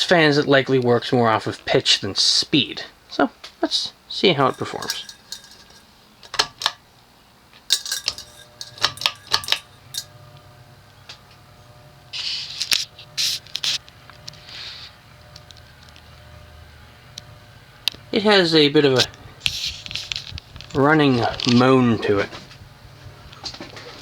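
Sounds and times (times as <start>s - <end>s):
ceiling fan motor humming: 4.0s - 24.0s
metallic clicks and rattles: 4.5s - 6.8s, 7.7s - 10.1s.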